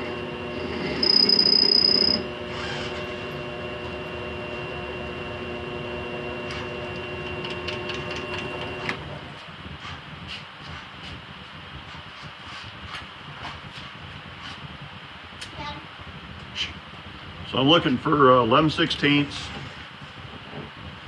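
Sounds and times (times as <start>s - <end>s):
mill-lathe motor running: 0.0s - 9.4s
high whine: 0.0s - 9.8s.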